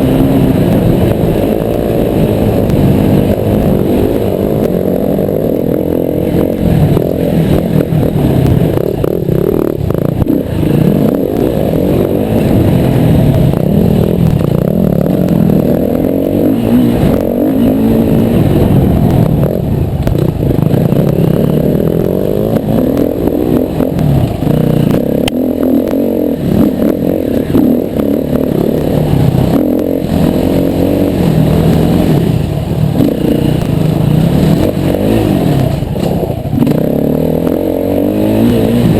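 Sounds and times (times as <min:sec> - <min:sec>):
motorcycle engine revving: 0:00.0 - 0:38.9
knocks and clatter: 0:35.6 - 0:36.8.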